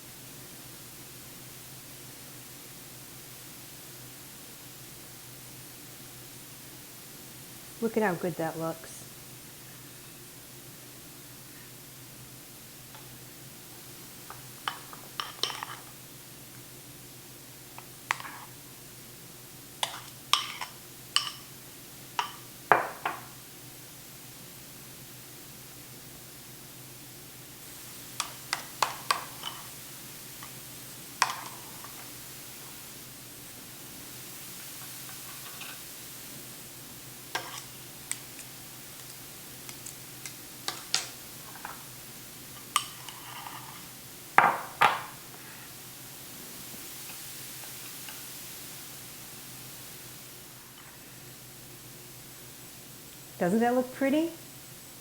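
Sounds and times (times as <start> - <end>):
metal utensil clinking on dish: 14.7 - 15.9, 19.8 - 21.5, 28.2 - 29.7.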